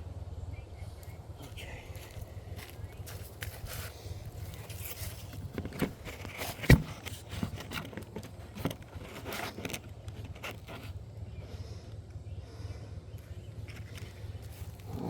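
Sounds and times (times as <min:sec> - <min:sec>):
equipment clicks and scrapes: 0:04.6 - 0:11.0.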